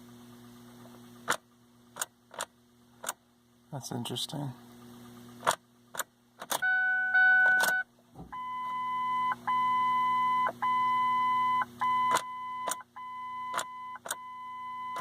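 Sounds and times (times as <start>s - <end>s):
low steady hum: 0.0s - 15.0s
ignition key clicks: 5.4s - 6.7s, 12.0s - 12.9s, 13.5s - 14.3s
dashboard warning chime: 6.6s - 15.0s.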